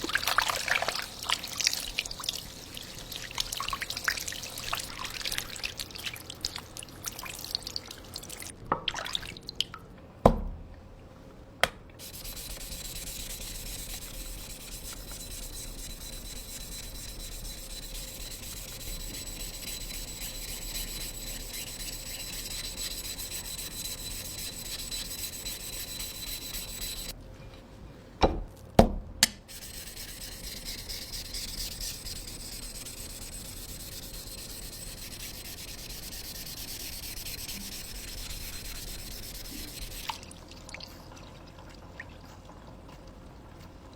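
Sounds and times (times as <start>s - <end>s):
water drips: 0.0s - 9.9s
blade rubbing on whetstone: 1.4s - 5.7s, 12.0s - 27.1s, 29.5s - 40.1s.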